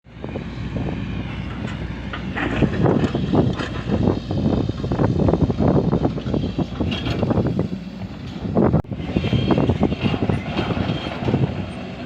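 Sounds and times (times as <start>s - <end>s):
excavator engine under load: 0.1s - 12.0s
metal clanks and rattles: 1.5s - 4.1s, 6.3s - 8.6s.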